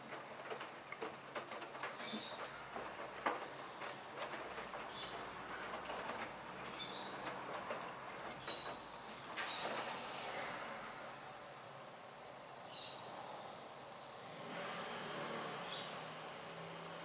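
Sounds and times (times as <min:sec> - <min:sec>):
washing machine drum sloshing: 0:00.0 - 0:11.0
short high hiss: 0:09.4 - 0:10.8.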